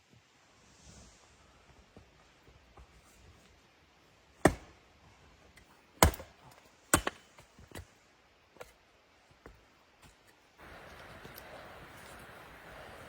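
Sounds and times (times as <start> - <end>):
sharp chopping knocks: 6.0 - 6.3.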